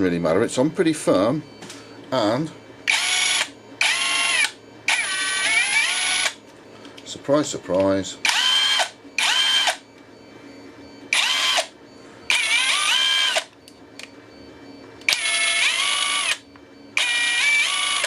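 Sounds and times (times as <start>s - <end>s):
impact driver motor whine: 2.9s - 6.4s, 8.2s - 9.8s, 11.1s - 11.7s, 12.3s - 13.5s, 15.1s - 16.4s, 17.0s - 18.0s.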